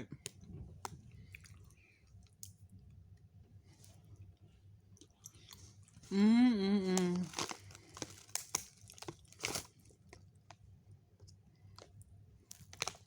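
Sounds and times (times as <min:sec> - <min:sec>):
chewing candy: 0:00.2 - 0:02.6, 0:06.8 - 0:10.6.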